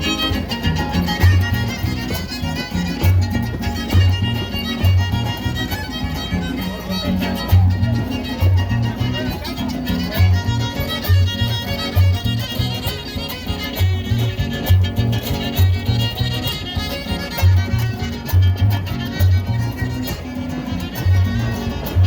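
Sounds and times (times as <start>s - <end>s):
strummed guitars: 0.0s - 22.0s
violin melody: 0.0s - 22.0s.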